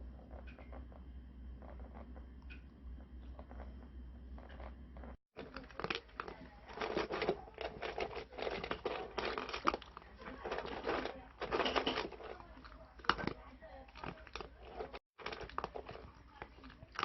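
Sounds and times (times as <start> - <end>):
crinkling and rustling: 4.4 - 17.0.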